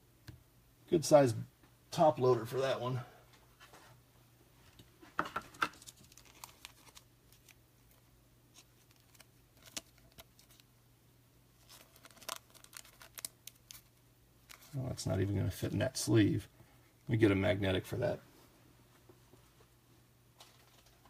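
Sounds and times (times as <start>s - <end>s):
plastic card sleeves rustling: 5.5s - 10.7s, 11.6s - 14.8s.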